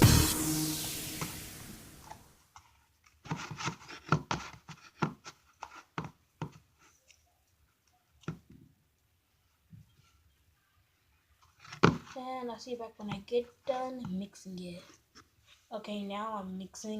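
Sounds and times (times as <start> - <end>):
music track: 0.0 - 2.1.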